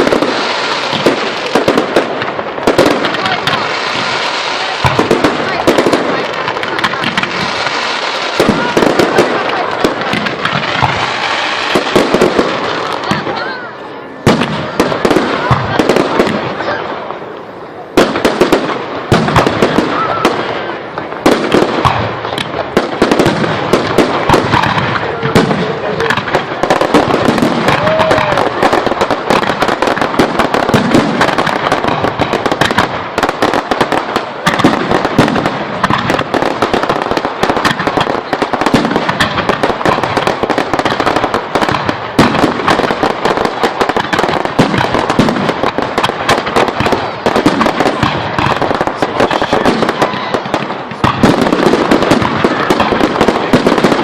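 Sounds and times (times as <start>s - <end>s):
fireworks bangs and crackles: 0.0s - 54.0s.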